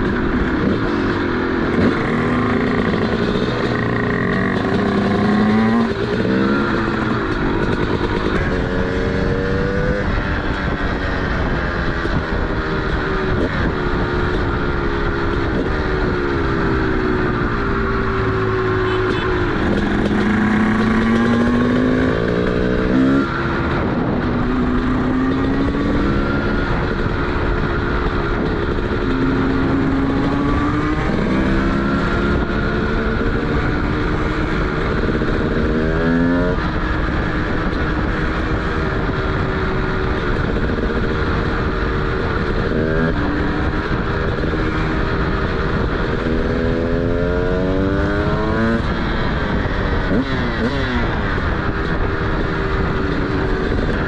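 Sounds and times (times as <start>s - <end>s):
two-stroke motorcycle engine revving: 0.0s - 54.0s.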